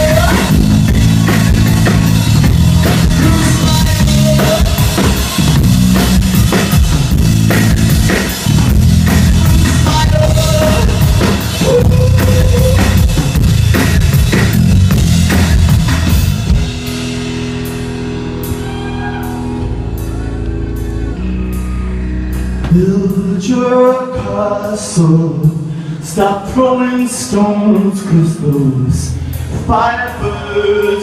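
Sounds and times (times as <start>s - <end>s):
drum kit: 0.0s - 21.8s
live band playing: 0.0s - 31.0s.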